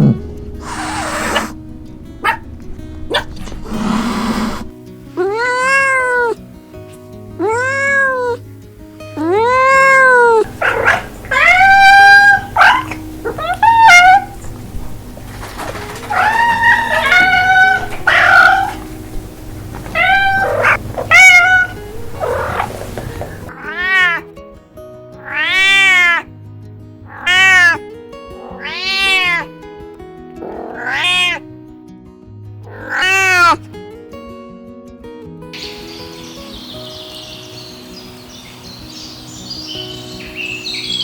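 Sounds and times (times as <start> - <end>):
cats meowing: 0.0 - 1.6, 3.1 - 6.4, 7.4 - 8.4, 9.2 - 24.3, 25.2 - 26.3, 27.1 - 29.5, 30.4 - 31.5, 32.7 - 33.6
background music: 0.0 - 41.0.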